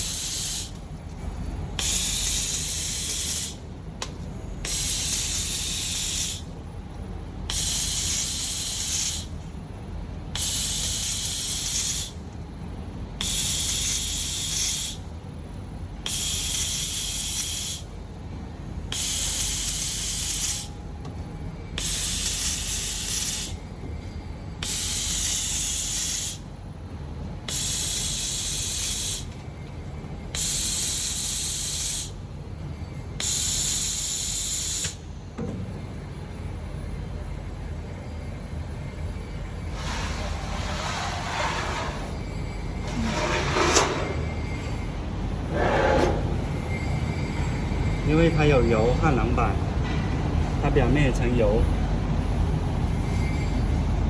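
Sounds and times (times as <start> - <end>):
welding hiss: 0.0 - 0.8, 1.8 - 3.6, 4.7 - 6.5, 7.5 - 9.3, 10.4 - 12.2, 13.2 - 15.0, 16.1 - 17.9, 18.9 - 20.7, 21.8 - 23.6, 24.6 - 26.4, 27.5 - 29.3, 30.4 - 32.2, 33.2 - 35.0
low machine hum: 0.0 - 17.0, 17.8 - 50.8.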